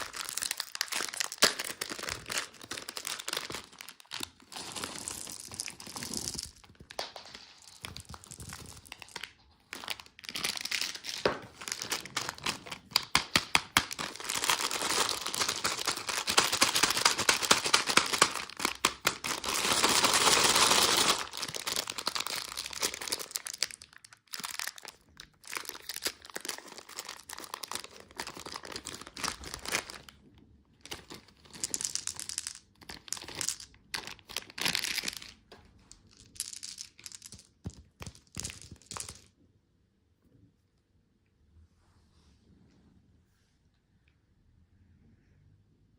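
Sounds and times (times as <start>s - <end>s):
wrappers crinkling and tearing: 0.0s - 30.1s.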